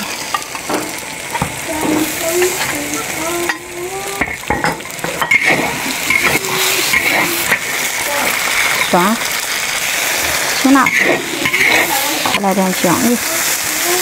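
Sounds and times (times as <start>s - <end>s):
meat sizzling in hot oil: 0.0s - 14.0s
spatula scraping a pan: 3.4s - 13.6s.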